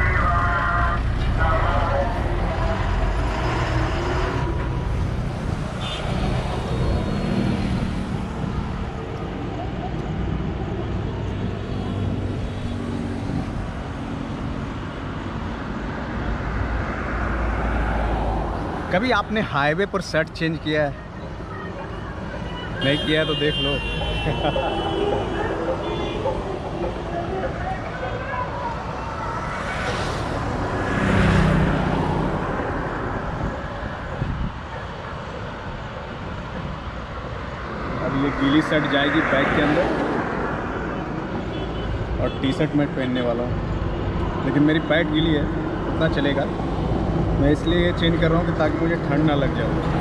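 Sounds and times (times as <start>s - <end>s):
passing vehicle engine hum: 0.0s - 18.9s, 23.7s - 41.4s
highway traffic rumble: 0.0s - 50.0s
steady road noise: 0.0s - 50.0s
vehicle passing close by: 28.6s - 34.6s.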